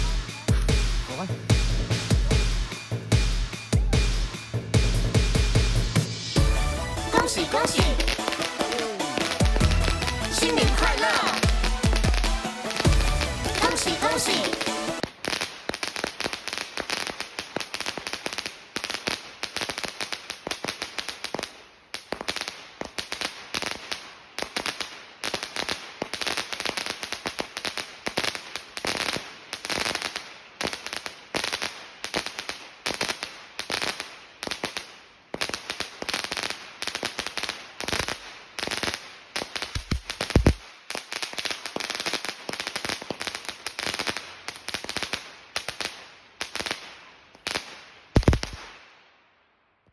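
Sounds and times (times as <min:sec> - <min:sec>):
firecrackers cracking rapidly: 0:00.0 - 0:48.9.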